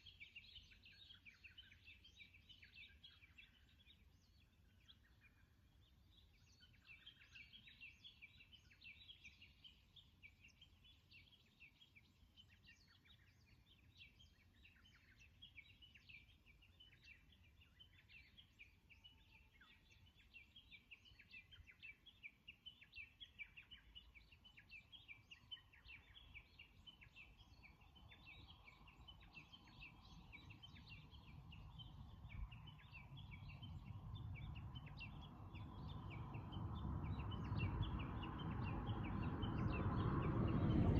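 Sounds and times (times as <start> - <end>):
wild birds chirping: 0.0 - 40.9
low rumble: 36.5 - 40.9.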